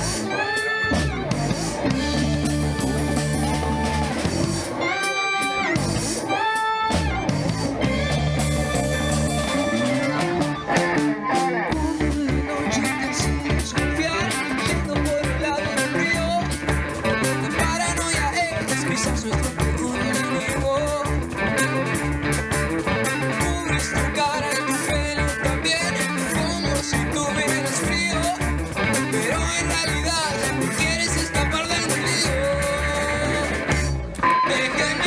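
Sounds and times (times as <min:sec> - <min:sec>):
rock band instrumental: 0:00.0 - 0:35.0.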